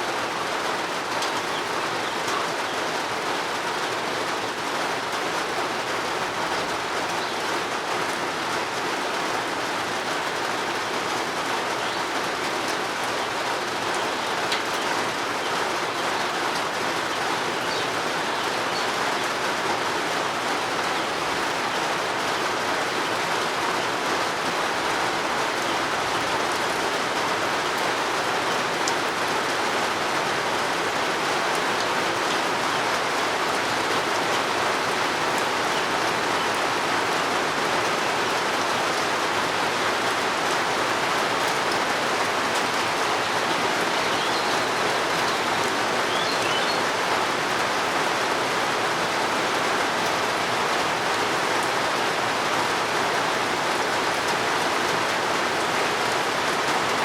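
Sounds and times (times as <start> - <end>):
steady rain: 0.0 - 57.0
faint bird chirps: 46.0 - 46.9.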